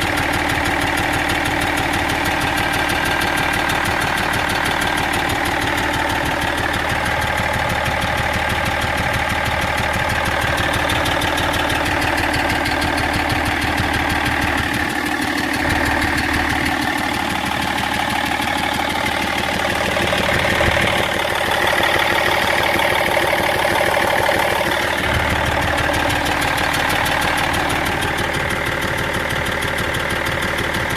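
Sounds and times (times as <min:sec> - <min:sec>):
diesel engine idling: 0:00.0 - 0:30.9.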